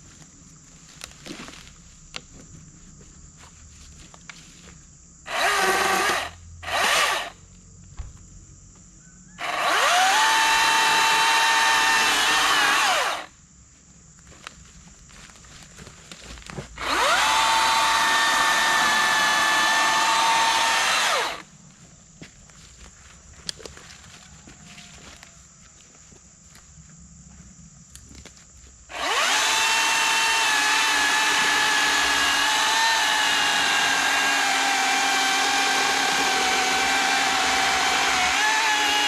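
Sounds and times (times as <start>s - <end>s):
electric chainsaw motor whine: 5.2s - 7.4s, 9.4s - 13.3s, 16.8s - 21.5s, 28.9s - 39.0s.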